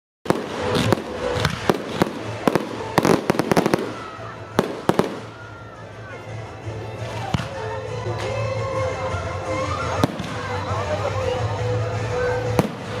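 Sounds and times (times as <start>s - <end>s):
fireworks bangs and cracks: 0.3s - 5.6s, 7.0s - 8.4s, 9.9s - 10.7s, 12.4s - 13.0s
fireworks crackling: 0.3s - 8.5s, 9.6s - 13.0s.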